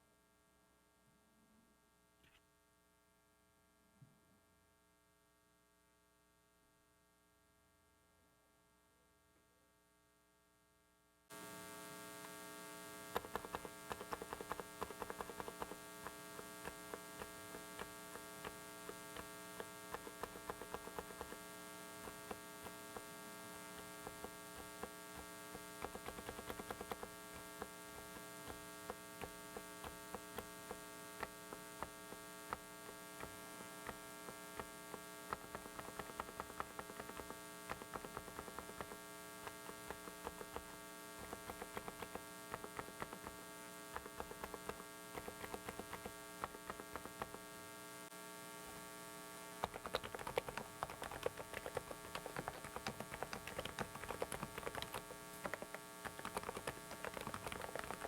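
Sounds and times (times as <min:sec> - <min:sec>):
loud electrical hum: 0:11.3 - 0:58.0
mechanical keyboard clicks: 0:13.2 - 0:21.4, 0:23.8 - 0:32.6, 0:34.6 - 0:47.4, 0:49.6 - 0:58.0.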